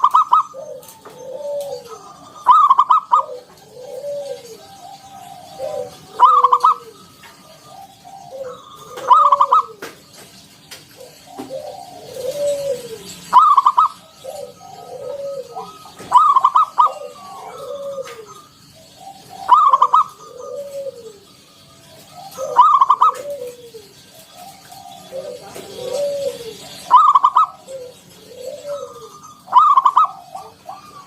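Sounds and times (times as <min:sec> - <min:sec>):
doves cooing: 0:00.0 - 0:31.0.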